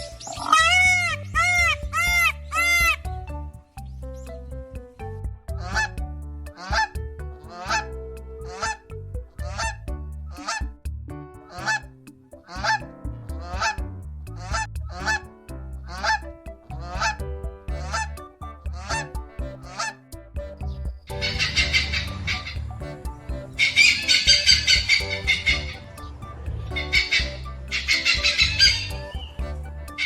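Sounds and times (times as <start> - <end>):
background music: 0.0 - 30.0
large bird honking: 21.1 - 30.0.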